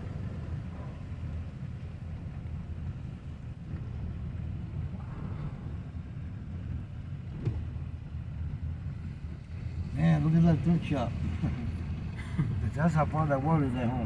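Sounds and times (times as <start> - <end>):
vehicle rumble: 0.0 - 14.0
wind buffeting microphone: 0.0 - 14.0.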